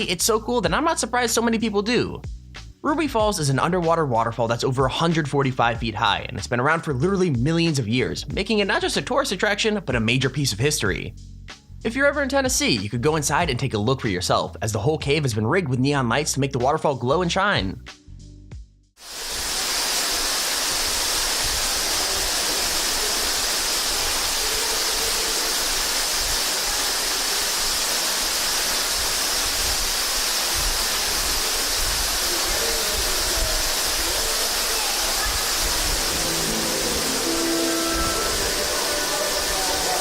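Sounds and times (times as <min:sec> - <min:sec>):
cave waterfall pouring: 0:19.0 - 0:40.0.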